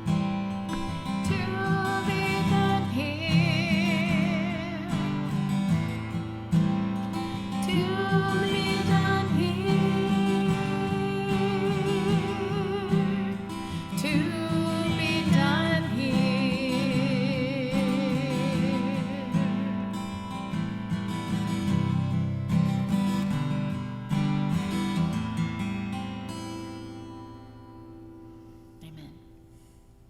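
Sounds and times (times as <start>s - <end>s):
strummed acoustic guitar: 0.0s - 30.0s
person singing with vibrato: 1.0s - 6.0s, 7.2s - 20.0s.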